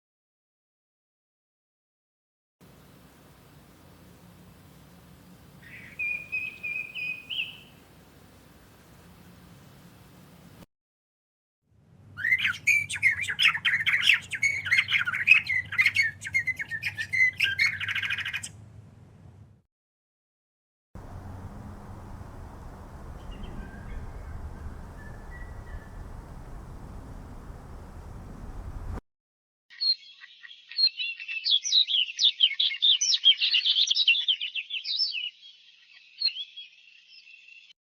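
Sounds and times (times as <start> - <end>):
songbird singing: 2.6 - 10.6, 21.0 - 29.0
faint low rumble: 21.0 - 29.0.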